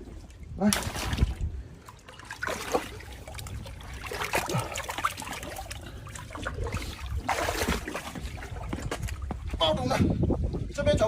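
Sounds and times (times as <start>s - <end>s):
shallow water trickling: 0.0s - 9.5s
small water splashes: 0.0s - 9.6s.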